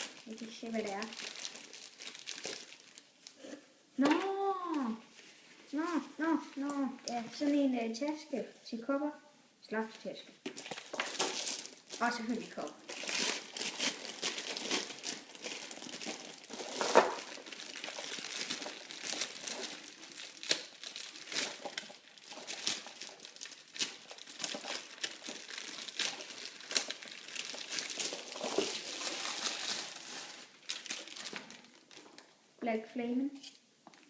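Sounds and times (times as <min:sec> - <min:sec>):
packaging crinkling and rustling: 0:00.0 - 0:03.4, 0:10.4 - 0:32.4.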